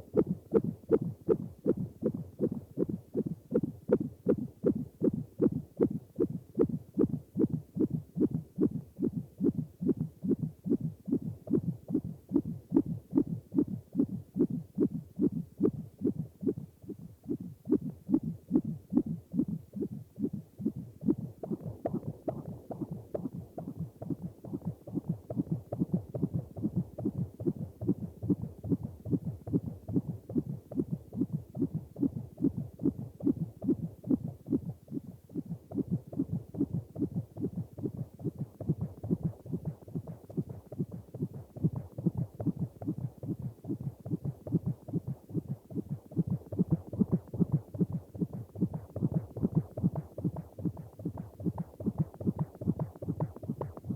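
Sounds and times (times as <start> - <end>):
heartbeat thumping: 0.0 - 53.9.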